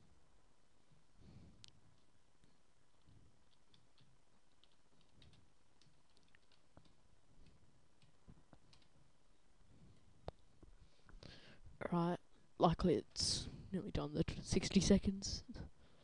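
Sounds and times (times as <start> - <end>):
faint scattered clicks: 1.6 - 9.0.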